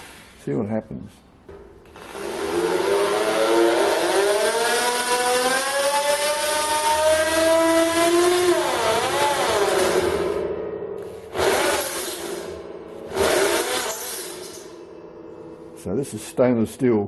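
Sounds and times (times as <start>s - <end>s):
electric drill motor whine: 2.0s - 10.4s, 11.3s - 14.7s.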